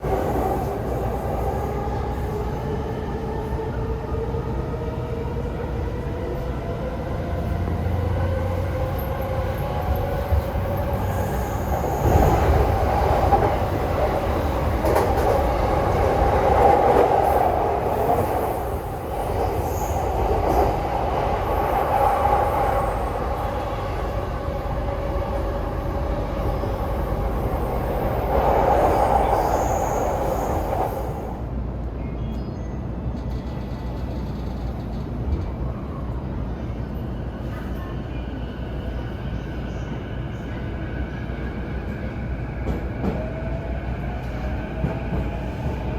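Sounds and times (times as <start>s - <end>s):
train wheels rumbling: 4.7s - 31.5s.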